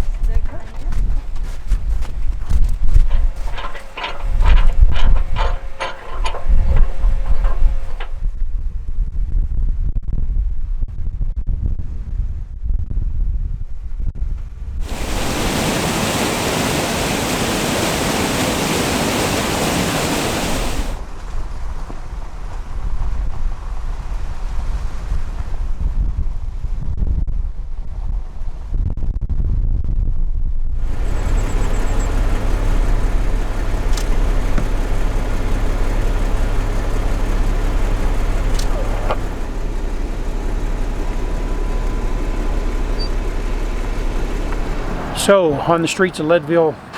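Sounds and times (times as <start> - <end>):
engine and road rumble: 0.0 - 9.2, 14.4 - 26.7, 30.8 - 46.9
rushing mountain stream: 14.8 - 21.1, 30.8 - 46.9.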